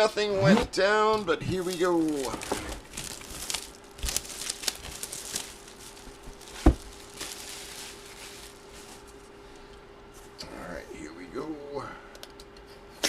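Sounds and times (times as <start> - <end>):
packaging crinkling and rustling: 1.4 - 9.4.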